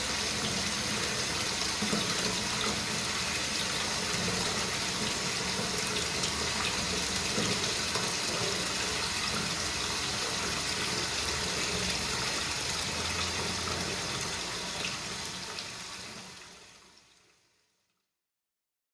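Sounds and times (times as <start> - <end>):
water pouring into bathtub: 0.0 - 17.6.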